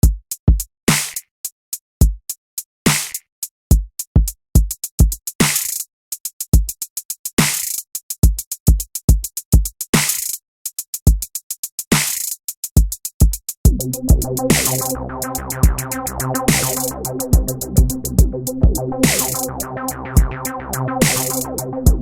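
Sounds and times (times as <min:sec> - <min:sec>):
hi-hat ticks: 0:00.0 - 0:22.0
noisy snare hits: 0:00.9 - 0:01.2, 0:02.9 - 0:03.2, 0:14.5 - 0:15.0, 0:16.5 - 0:17.5, 0:19.0 - 0:19.5, 0:21.0 - 0:21.6
deep booming kick drums: 0:13.7 - 0:15.0, 0:15.6 - 0:19.5, 0:20.2 - 0:22.0.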